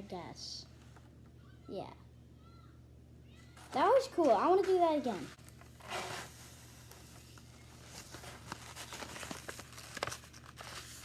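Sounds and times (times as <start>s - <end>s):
paper crinkling: 5.4s - 11.0s.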